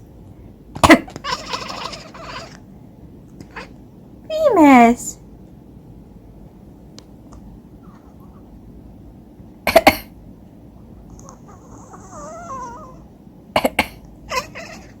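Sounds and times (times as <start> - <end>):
cat chirping chatter: 1.1 - 2.6, 14.3 - 15.0
person coughing: 9.7 - 10.2, 13.6 - 14.0.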